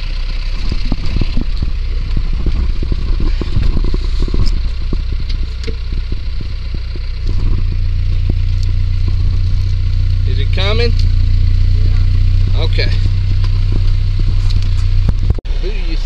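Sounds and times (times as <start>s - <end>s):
vehicle engine running: 0.0s - 16.0s
clattering and scraping knocks: 0.5s - 10.2s.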